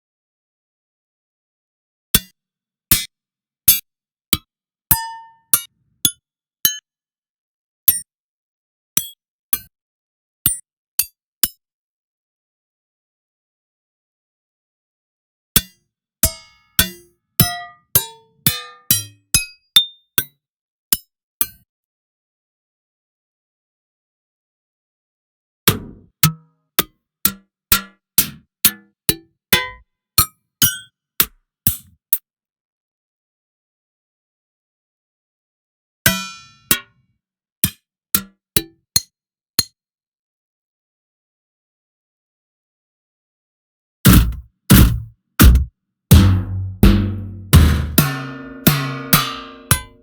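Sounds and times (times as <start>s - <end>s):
metallic hits ringing: 44.1s - 50.0s.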